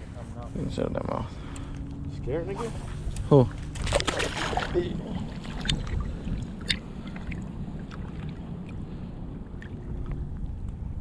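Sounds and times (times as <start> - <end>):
wind rumbling on microphone: 2.0 - 11.0.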